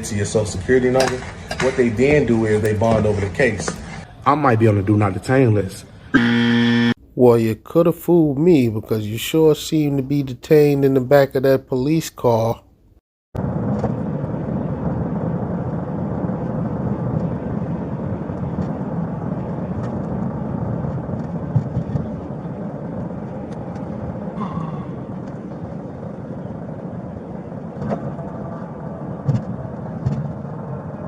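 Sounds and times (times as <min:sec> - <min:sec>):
car road and engine noise: 0:13.4 - 0:24.4.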